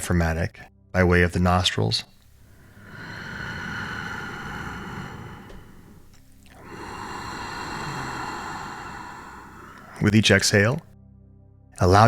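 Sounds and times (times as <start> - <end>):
deep breathing through nose: 2.0 - 10.8.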